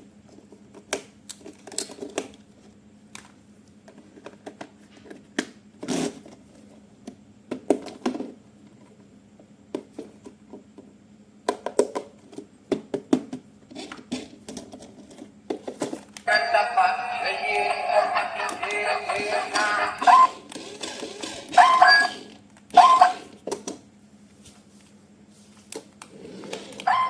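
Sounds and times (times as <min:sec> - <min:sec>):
music: 0:16.3 - 0:20.3.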